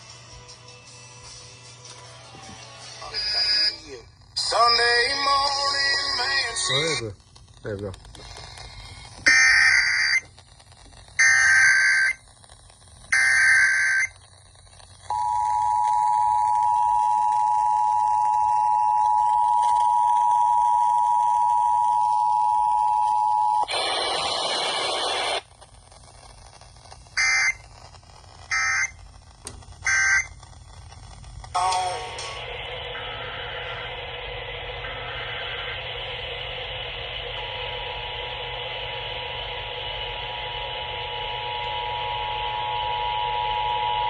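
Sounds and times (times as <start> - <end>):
screeching digital header bursts: 8.2 - 10.3, 11.2 - 12.2, 13.1 - 14.2, 27.2 - 27.6, 28.5 - 29.0, 29.8 - 30.3.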